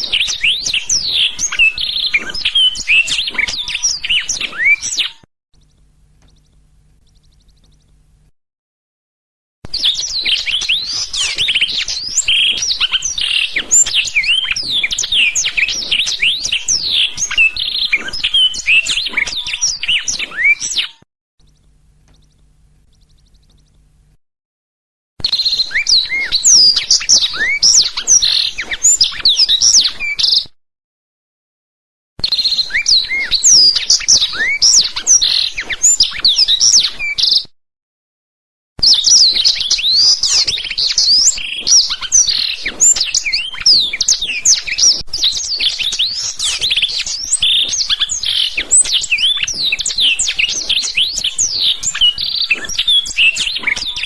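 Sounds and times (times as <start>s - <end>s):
bird singing rapid chirps and trills: 0.0s - 8.1s, 9.7s - 23.9s, 25.2s - 30.4s, 32.2s - 37.4s, 38.8s - 54.0s.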